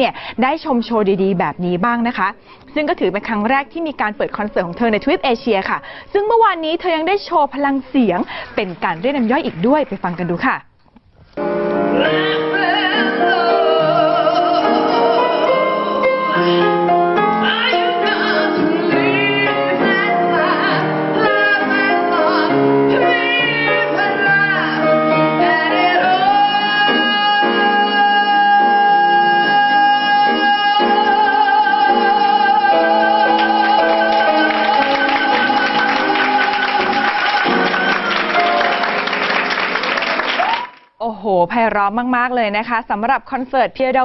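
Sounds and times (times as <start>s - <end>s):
instrumental accompaniment: 11.2s - 40.0s
woman singing: 12.0s - 38.6s.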